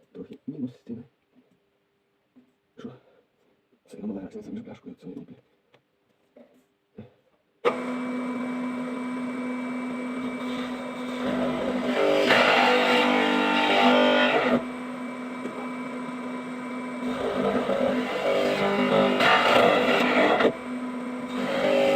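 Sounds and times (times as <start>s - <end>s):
power tool cutting wood: 7.6s - 21.9s.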